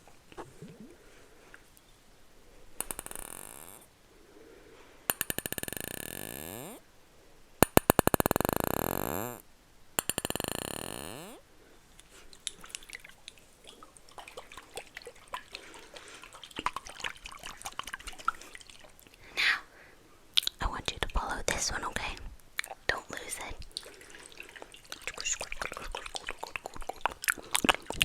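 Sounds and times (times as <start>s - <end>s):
rapid clicking bursts: 7.6s - 9.4s, 10.0s - 11.4s.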